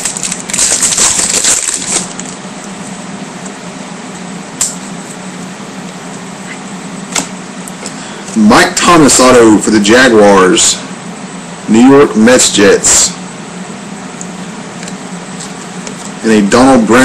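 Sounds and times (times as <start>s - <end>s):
foil wrapper crinkling: 0.0s - 2.4s
steady low hum: 0.0s - 17.0s.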